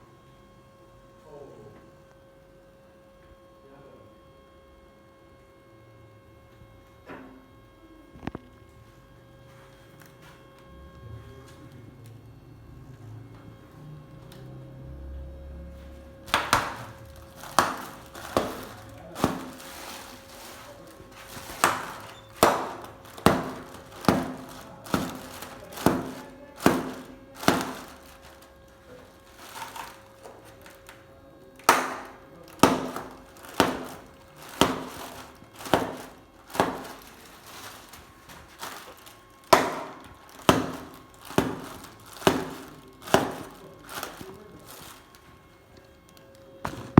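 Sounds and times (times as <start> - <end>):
foil balloons popping: 16.3 - 31.0, 31.6 - 45.6, 46.6 - 46.9.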